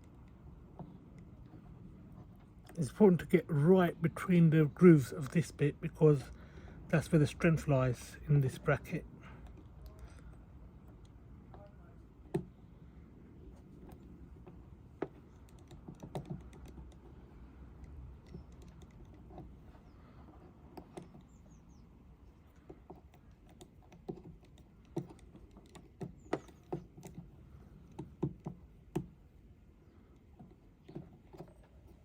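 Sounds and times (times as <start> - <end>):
faint low hum: 0.0 - 32.0
tools and plastic clicking: 13.6 - 32.0.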